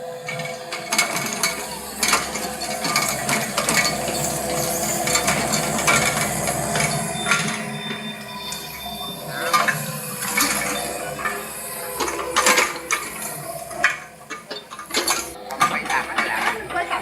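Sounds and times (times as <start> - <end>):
mechanical clanking and clicking: 12.0 - 16.8.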